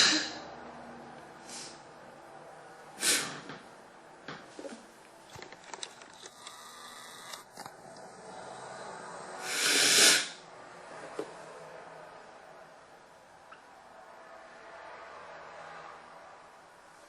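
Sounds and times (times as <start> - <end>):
person blowing nose: 1.5 - 1.8, 3.0 - 3.4, 9.4 - 10.4
faint clicks and rustles: 4.4 - 6.6.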